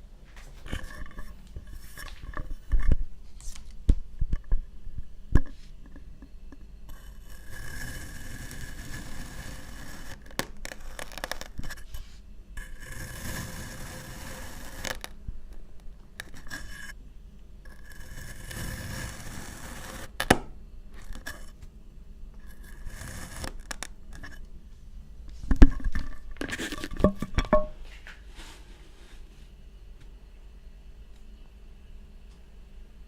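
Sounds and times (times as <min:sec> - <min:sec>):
tool scraping sand: 0:06.9 - 0:11.0, 0:11.8 - 0:15.1, 0:17.8 - 0:20.2.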